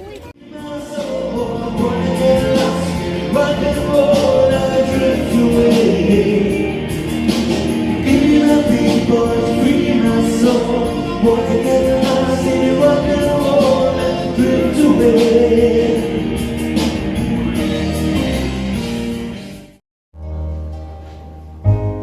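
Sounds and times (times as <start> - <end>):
person singing: 0.4 - 16.6
instrumental backing music: 0.4 - 22.0.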